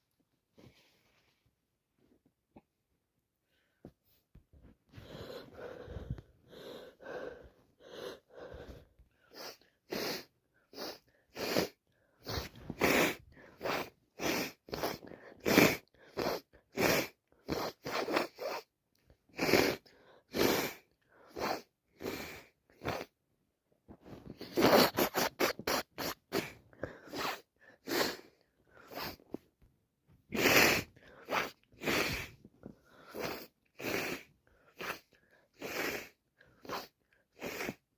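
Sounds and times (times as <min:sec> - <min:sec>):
person sneezing and sniffing: 0:04.6 - 0:23.2, 0:23.9 - 0:29.4, 0:30.2 - 0:37.9.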